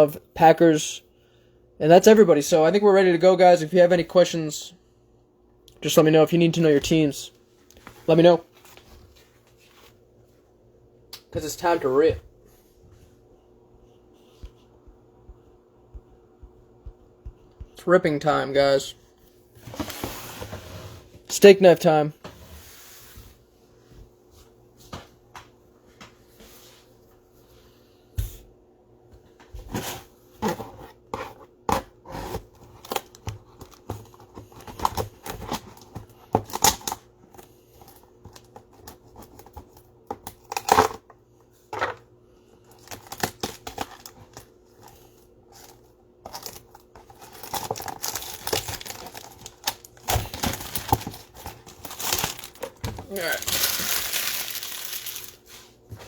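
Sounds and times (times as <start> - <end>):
plastic wrap crinkling and tearing: 42.7 - 45.7, 46.3 - 55.6.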